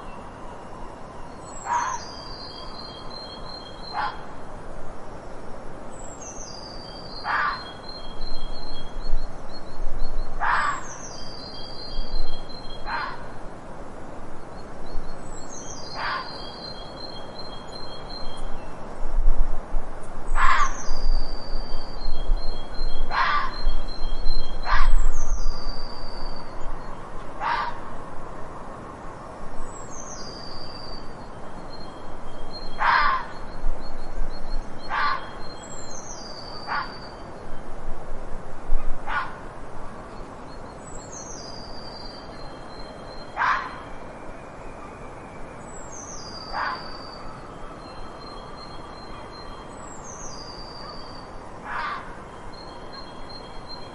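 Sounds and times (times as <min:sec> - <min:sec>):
fox barking: 0:01.7 - 0:02.0, 0:03.9 - 0:04.3, 0:07.2 - 0:07.7, 0:10.4 - 0:10.8, 0:12.9 - 0:13.2, 0:16.0 - 0:16.3, 0:23.1 - 0:23.6, 0:27.4 - 0:27.9, 0:32.8 - 0:33.3, 0:34.9 - 0:35.3, 0:36.6 - 0:37.0, 0:39.1 - 0:39.4, 0:43.4 - 0:43.8, 0:46.5 - 0:47.0, 0:51.6 - 0:52.2.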